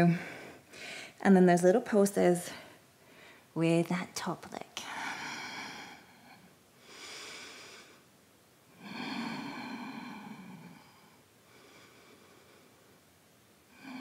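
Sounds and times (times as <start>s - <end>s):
woman breathing with effort: 0.0s - 1.2s, 2.5s - 3.6s, 4.9s - 8.1s, 8.7s - 13.0s.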